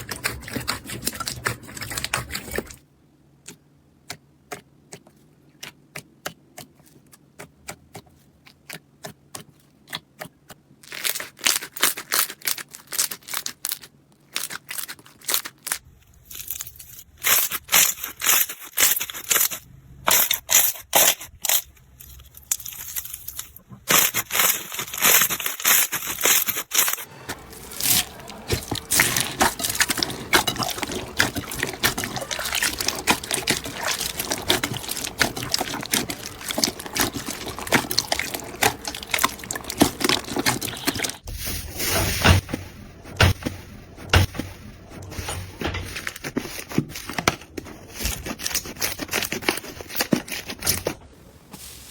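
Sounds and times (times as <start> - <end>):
wet slime squishes: 0.0 - 41.3, 46.0 - 51.0
slime popping and crackling: 10.9 - 41.3.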